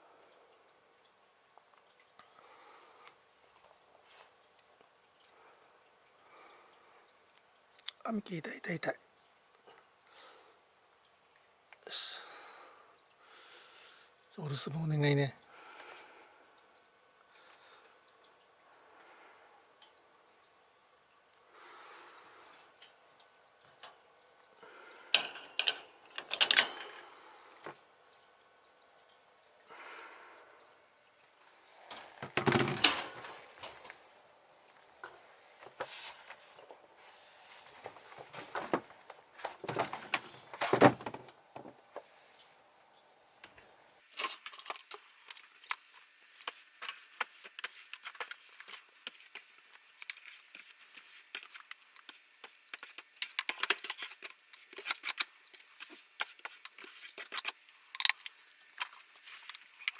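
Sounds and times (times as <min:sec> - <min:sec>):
rustling of clothing and fur: 0:31.4 - 0:41.3
knocks and scrapes: 0:35.0 - 0:42.1.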